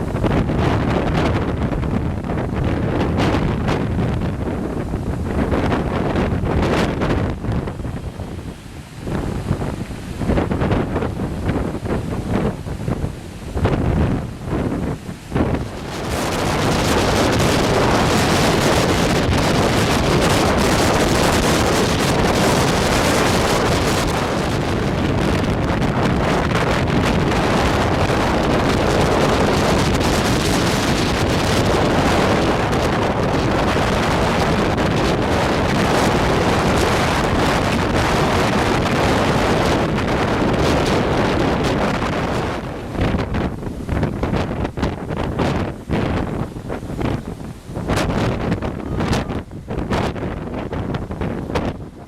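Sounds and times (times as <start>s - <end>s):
strong wind buffeting microphone: 0.0s - 52.0s
surf breaking on beach: 0.0s - 52.0s.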